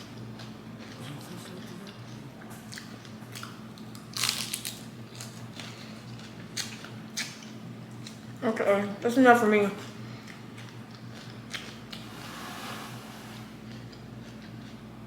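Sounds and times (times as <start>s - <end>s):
person chewing crunchy food: 10.2s - 12.1s, 13.7s - 15.0s.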